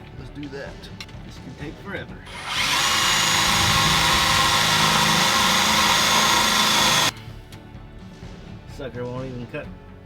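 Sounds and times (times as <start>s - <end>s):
power cutting tool whining: 2.3s - 7.1s.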